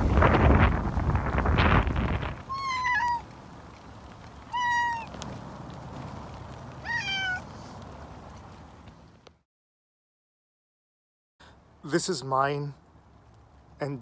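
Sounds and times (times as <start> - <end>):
cat meowing: 2.5 - 3.2, 4.5 - 5.2, 6.8 - 7.5.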